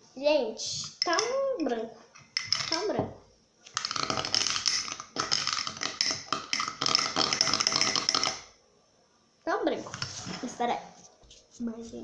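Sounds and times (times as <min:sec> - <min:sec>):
slime stirred in a pot: 0:03.8 - 0:08.5.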